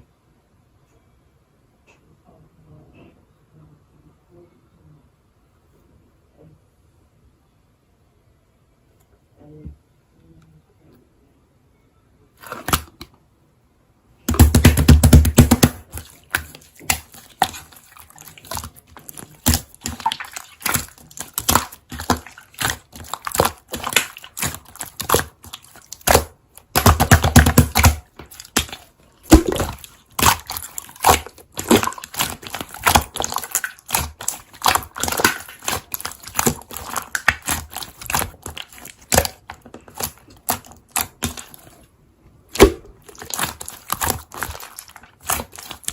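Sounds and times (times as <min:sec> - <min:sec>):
deep slime squishes: 0:12.3 - 0:13.1, 0:14.2 - 0:45.9
slime crackling and popping: 0:14.3 - 0:41.8, 0:42.5 - 0:45.9.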